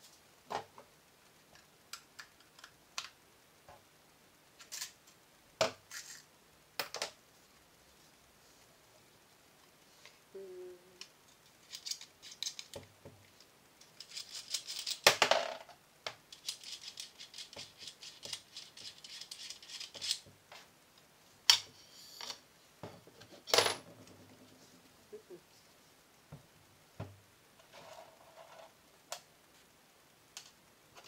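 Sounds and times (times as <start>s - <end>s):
toy gun parts clicking and rattling: 11.6s - 12.8s, 13.8s - 15.2s, 16.3s - 20.2s.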